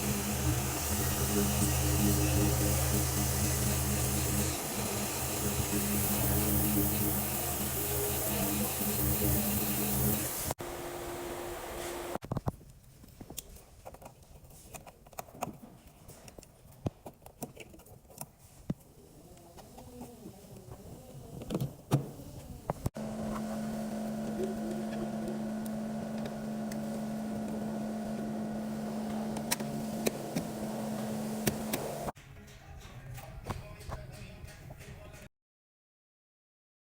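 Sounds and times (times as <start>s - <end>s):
steady motor hum: 0.0s - 12.2s, 22.6s - 32.2s.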